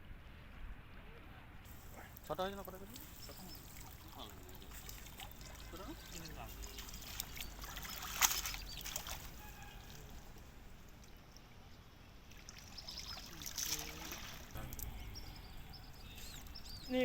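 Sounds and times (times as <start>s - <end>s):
loud water splashes: 1.7s - 10.5s, 12.3s - 14.7s
water trickling and splashing: 1.7s - 17.0s.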